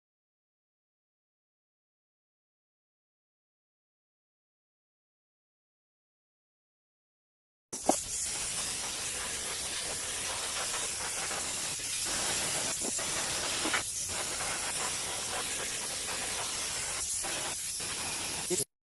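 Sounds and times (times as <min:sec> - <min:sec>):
compressed air hissing: 0:07.8 - 0:18.7.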